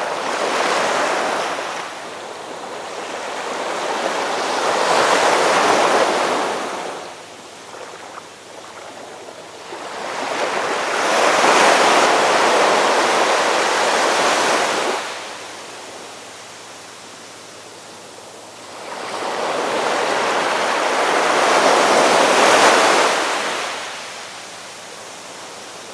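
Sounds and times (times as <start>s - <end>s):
ocean waves breaking: 0.0s - 15.5s.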